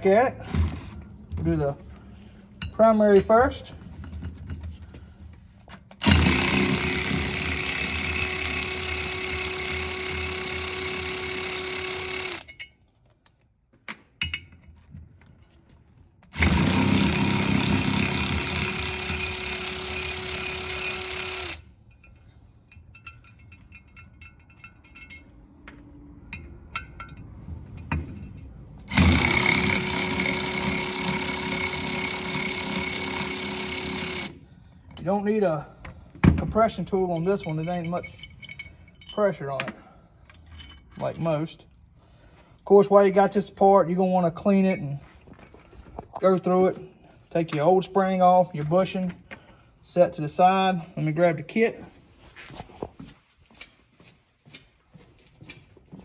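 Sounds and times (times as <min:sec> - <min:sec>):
tools and parts clinking: 0:02.6 - 0:35.1, 0:35.8 - 0:41.4, 0:44.4 - 0:46.5
impact wrench running: 0:06.0 - 0:12.6, 0:16.3 - 0:21.7, 0:28.8 - 0:34.4.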